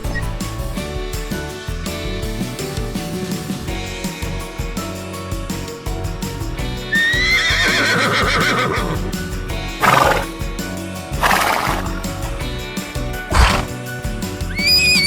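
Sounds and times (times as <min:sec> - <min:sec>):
background music: 0:00.0 - 0:15.0
horse whinnying: 0:07.1 - 0:09.0, 0:13.3 - 0:13.7
horse breathy snorts: 0:13.3 - 0:13.8.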